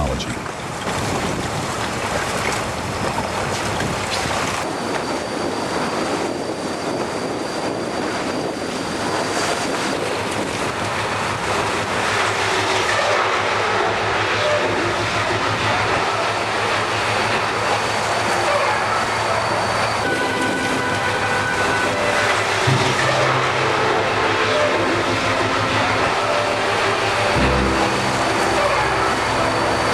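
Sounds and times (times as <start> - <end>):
water rushing along ship hull: 0.0 - 5.2, 8.4 - 29.9
faint high whine: 17.8 - 29.9.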